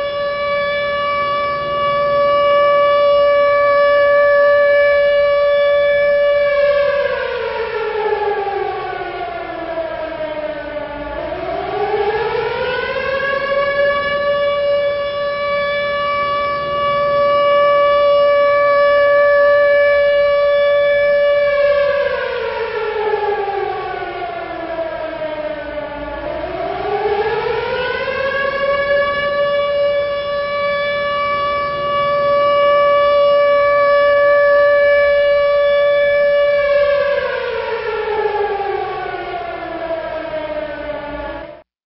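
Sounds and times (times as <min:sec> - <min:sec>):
air raid siren wailing: 0:00.0 - 0:41.7.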